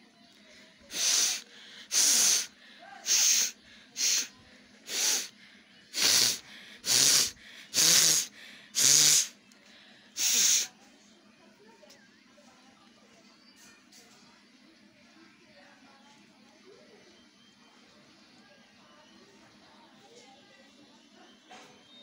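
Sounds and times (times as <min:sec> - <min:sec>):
person blowing nose: 0:00.9 - 0:02.5, 0:03.1 - 0:04.3, 0:04.9 - 0:05.3, 0:05.9 - 0:09.3, 0:10.2 - 0:10.7.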